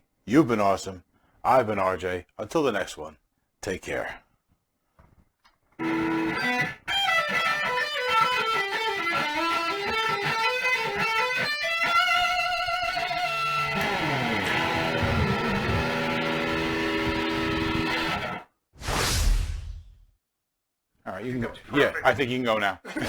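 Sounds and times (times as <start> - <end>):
electric guitar runs: 5.8 - 18.4.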